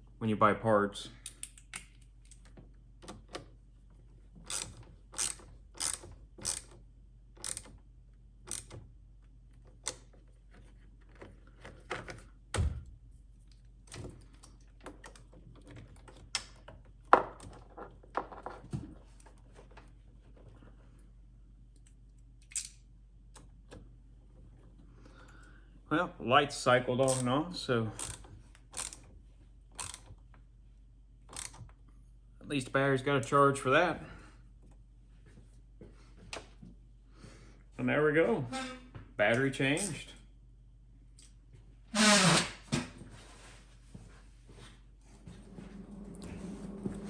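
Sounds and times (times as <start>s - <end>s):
hand tools clicking on metal: 4.5s - 6.8s, 7.4s - 7.7s, 27.0s - 27.3s, 28.0s - 29.0s, 29.8s - 30.1s.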